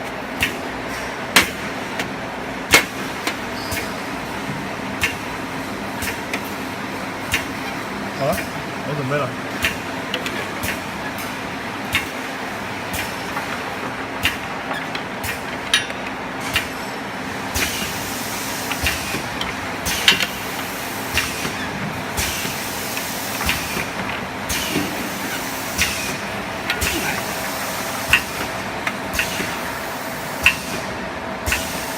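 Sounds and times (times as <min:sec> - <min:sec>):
machine humming: 0:00.0 - 0:31.9
machine clicks and knocks: 0:01.3 - 0:05.3, 0:09.5 - 0:12.2, 0:12.9 - 0:16.8, 0:17.5 - 0:29.6.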